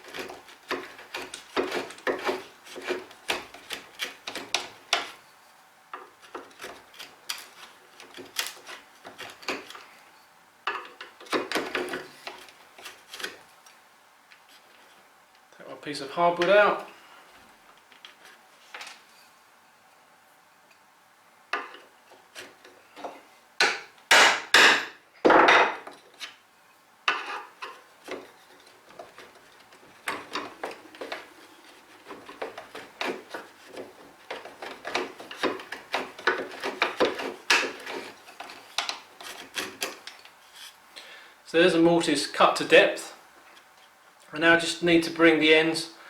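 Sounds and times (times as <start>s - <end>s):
chisel scraping wood: 0.0s - 5.3s, 6.0s - 10.0s, 10.8s - 13.5s, 21.6s - 24.8s, 27.1s - 40.8s
chisel knocking on wood: 23.6s - 25.8s.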